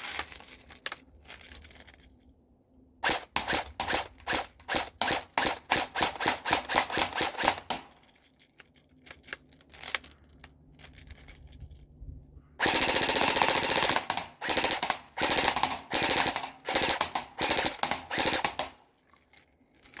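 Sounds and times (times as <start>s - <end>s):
air gun firing rapid shots: 3.0s - 8.0s, 12.6s - 18.9s.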